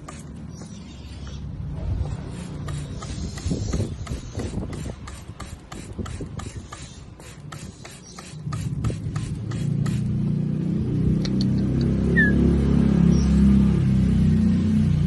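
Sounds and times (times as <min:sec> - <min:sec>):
quick series of clicks: 0:11.2 - 0:12.0.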